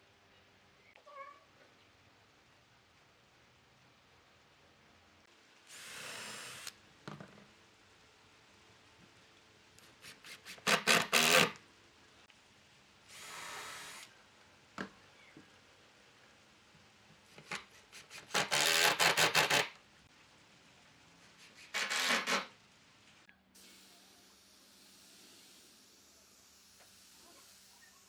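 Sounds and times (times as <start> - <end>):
soft smooth hiss: 0.0 - 10.4, 11.6 - 17.9, 19.7 - 21.6, 22.5 - 28.0.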